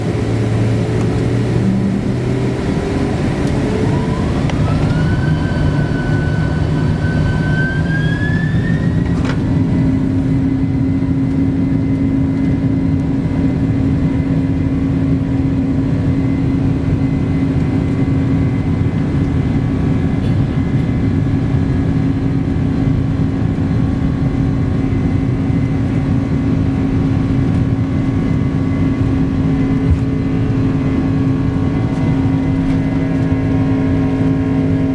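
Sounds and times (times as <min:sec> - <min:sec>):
jet engines spooling up: 0:00.0 - 0:12.8, 0:24.4 - 0:34.9.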